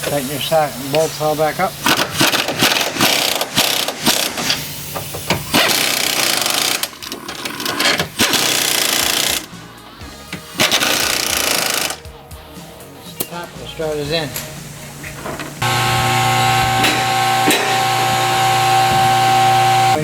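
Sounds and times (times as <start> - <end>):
impact wrench hammering: 1.8 - 9.5, 10.4 - 12.0, 15.6 - 20.0.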